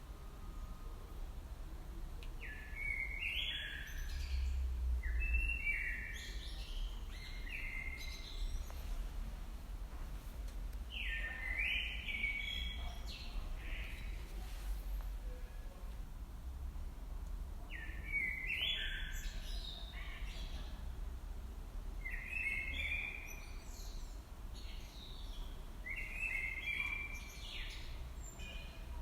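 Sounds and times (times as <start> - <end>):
low rumble of wind: 0.0 - 29.0
small songbird chirping: 2.4 - 9.3, 10.8 - 14.4, 17.7 - 20.8, 22.0 - 29.0.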